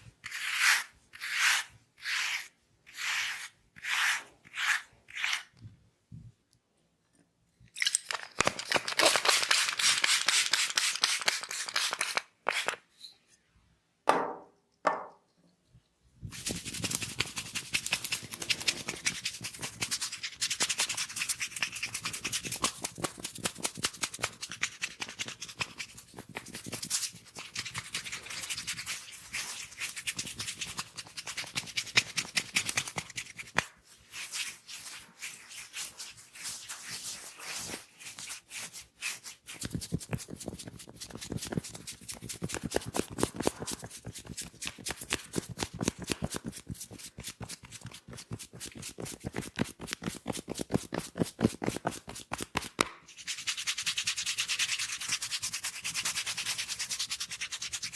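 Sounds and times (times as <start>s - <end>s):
hands rubbing hair and scalp: 28.3s - 57.8s.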